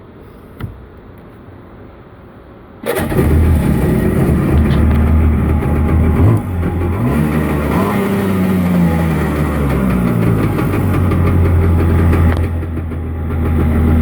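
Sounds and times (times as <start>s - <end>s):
two-stroke boat engine revving: 2.8s - 14.0s.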